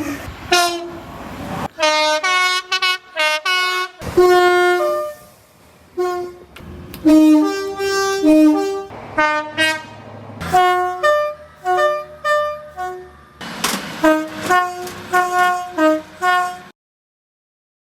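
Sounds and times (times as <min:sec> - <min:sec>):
locomotive horn blasts: 0:00.5 - 0:01.0, 0:01.7 - 0:05.4, 0:06.0 - 0:13.3, 0:14.0 - 0:16.8.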